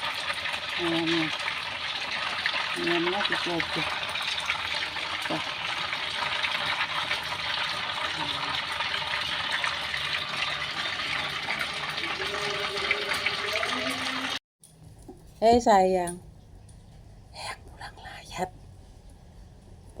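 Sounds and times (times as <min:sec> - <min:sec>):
chicken deep-frying in oil: 0:00.0 - 0:14.4.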